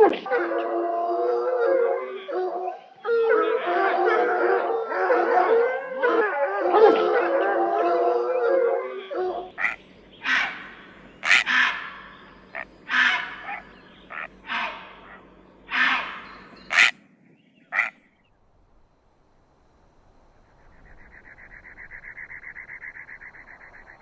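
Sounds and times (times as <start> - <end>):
harsh animal calls: 9.4 - 17.0, 17.7 - 18.1.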